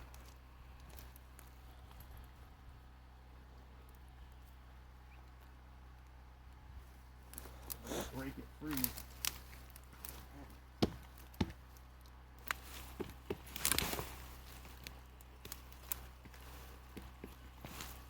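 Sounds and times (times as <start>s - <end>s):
wood knocks and thuds: 10.8s - 11.6s, 12.9s - 13.6s.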